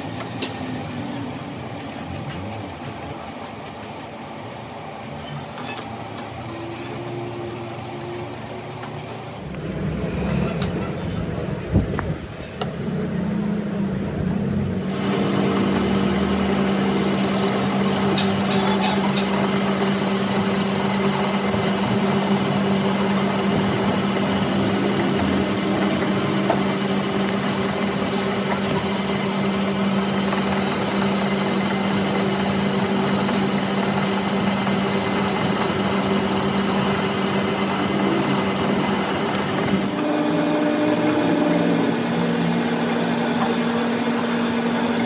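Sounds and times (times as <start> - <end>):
machine humming: 9.3 - 45.0.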